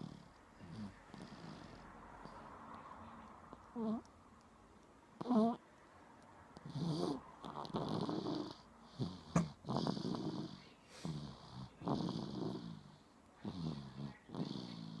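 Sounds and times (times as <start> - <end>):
person snoring: 6.6 - 15.0.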